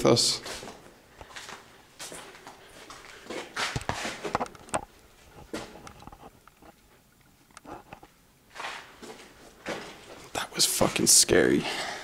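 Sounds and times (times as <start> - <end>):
short scuffing noises: 0.4 - 4.4, 8.5 - 11.1.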